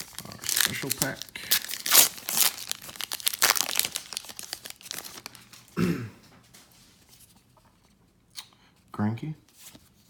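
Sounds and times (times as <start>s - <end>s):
wrapper being torn and crinkled: 0.0s - 5.7s.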